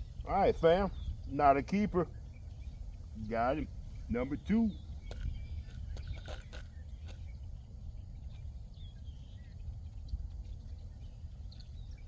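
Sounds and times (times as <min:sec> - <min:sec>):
low outdoor rumble: 0:00.0 - 0:06.1
faint bird chirps: 0:00.0 - 0:12.0.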